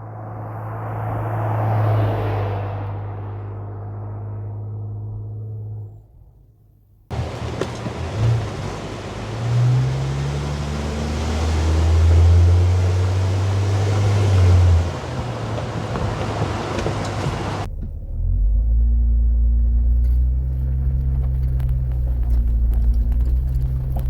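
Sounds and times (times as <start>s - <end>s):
road and wind noise: 0.0s - 24.0s
car engine hum: 7.1s - 24.0s.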